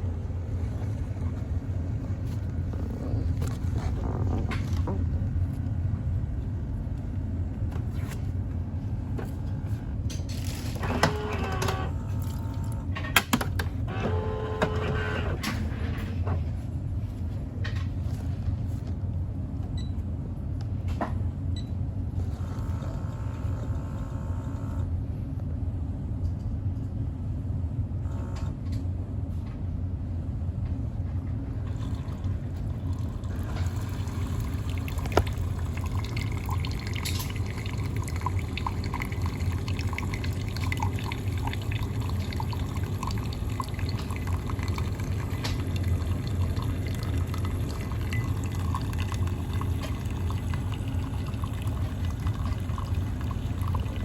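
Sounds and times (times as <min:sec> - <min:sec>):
coffee machine humming: 0:00.0 - 0:18.8, 0:22.0 - 0:25.2, 0:31.0 - 0:54.0
liquid pouring and dripping: 0:31.7 - 0:54.0.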